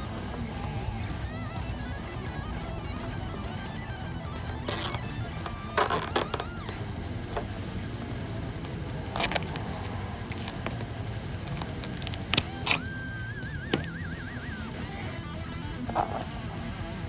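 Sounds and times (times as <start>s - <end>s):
zip ties ratcheting clicks: 4.4s - 12.8s.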